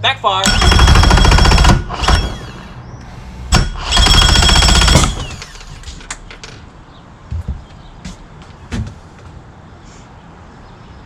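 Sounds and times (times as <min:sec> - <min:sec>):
outboard engine starter cranking: 0:00.5 - 0:05.9
engine backfire bang: 0:00.5 - 0:06.0.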